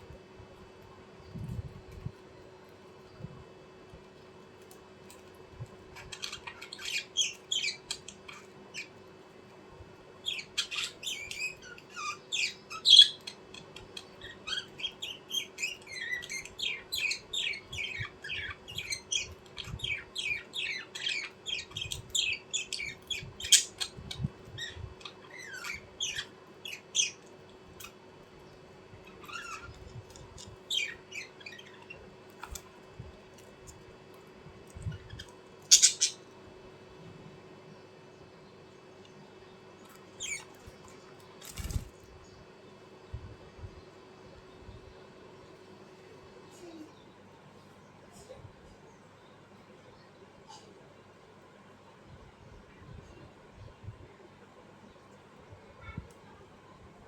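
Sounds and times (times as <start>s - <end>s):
small birds chirping: 0.0s - 51.6s, 52.2s - 57.0s.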